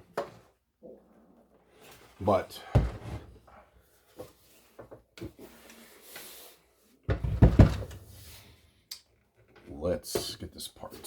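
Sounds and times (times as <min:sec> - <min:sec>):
heavy clunks and knocks: 0:07.1 - 0:08.0.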